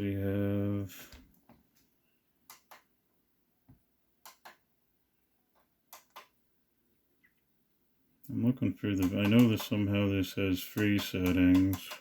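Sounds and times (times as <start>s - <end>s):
monitor button clicks: 2.5s - 2.9s, 4.3s - 4.6s, 5.9s - 6.4s, 9.0s - 9.8s.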